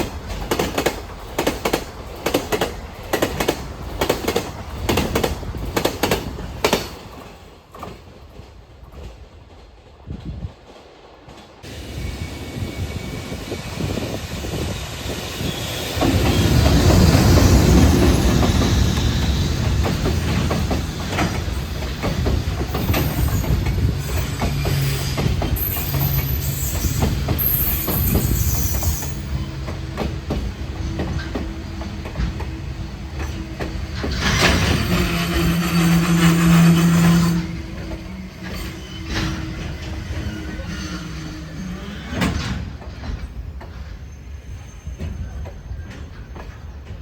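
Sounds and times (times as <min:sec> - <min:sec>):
train wheels clicking over rail joints: 0:00.0 - 0:47.0
high wheel squeals: 0:20.8 - 0:29.8, 0:32.2 - 0:42.4, 0:43.8 - 0:46.7.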